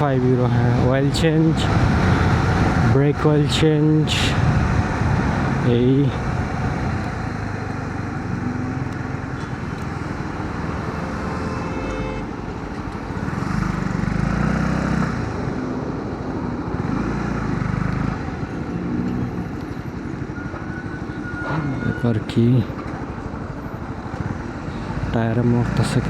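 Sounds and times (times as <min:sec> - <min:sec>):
traffic noise: 0:00.0 - 0:26.0
wind: 0:00.0 - 0:26.0
motorcycle engine running: 0:04.5 - 0:21.1.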